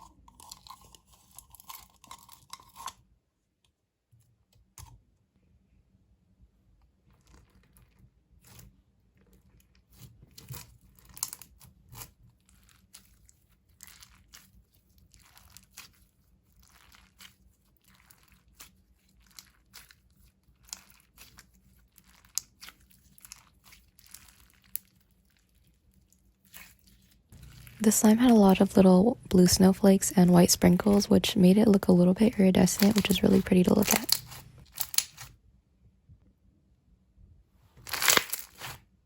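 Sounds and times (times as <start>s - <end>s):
slime crunching and popping: 9.8s - 25.7s, 26.4s - 27.8s, 32.6s - 35.4s, 37.8s - 38.8s.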